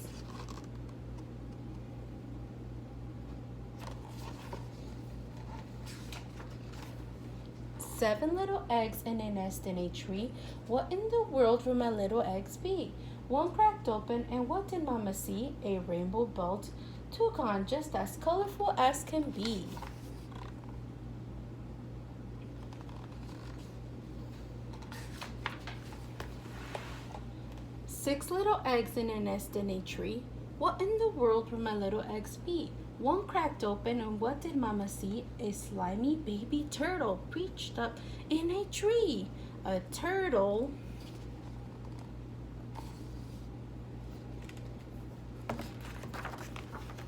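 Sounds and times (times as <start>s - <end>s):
paper pages turning: 0.0s - 0.9s, 3.8s - 7.2s, 19.2s - 20.8s, 22.6s - 23.7s, 24.3s - 27.2s, 42.8s - 47.0s
steady low hum: 0.0s - 47.0s.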